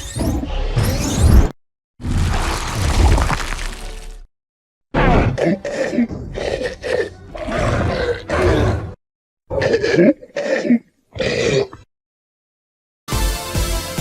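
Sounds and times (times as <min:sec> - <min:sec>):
monster grunting growling roars: 0:02.1 - 0:04.1.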